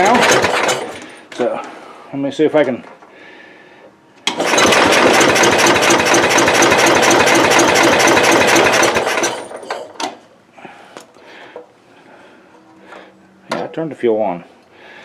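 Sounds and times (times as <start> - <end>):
small engine cranking on starter: 0.0 - 1.2, 4.2 - 10.0
small engine running: 0.0 - 1.2, 4.3 - 9.9.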